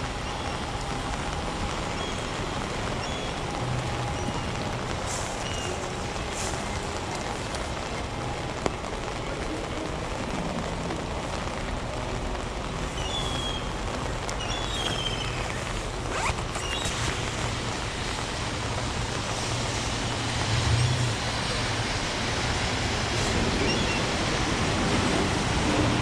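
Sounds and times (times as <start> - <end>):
heavy rain: 0.0 - 26.0
short high squeaks: 14.4 - 17.3.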